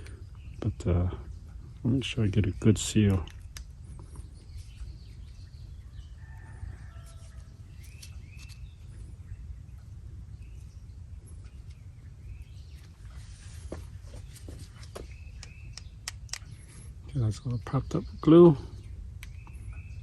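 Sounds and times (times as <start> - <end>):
birds chirping: 0.0 - 20.0
steady low rumble: 0.0 - 20.0
sharp clicks: 15.4 - 16.6.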